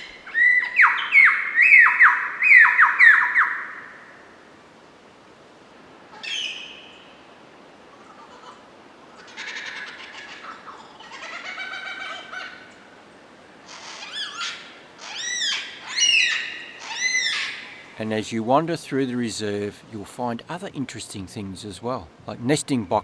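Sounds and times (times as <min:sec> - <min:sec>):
lyrebird singing: 0:00.0 - 0:04.2, 0:06.2 - 0:07.2, 0:13.7 - 0:18.2.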